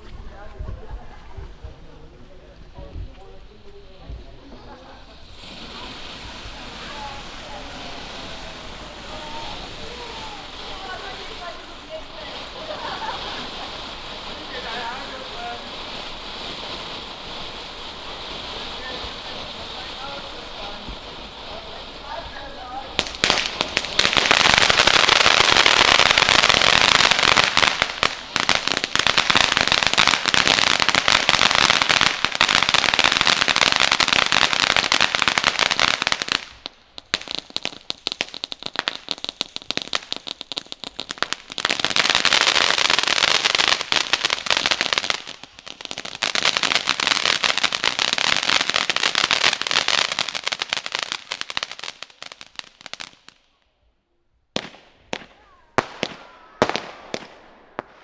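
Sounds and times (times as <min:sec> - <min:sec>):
fireworks crackling and fizzing: 0:00.0 - 0:53.8, 0:54.5 - 0:58.0.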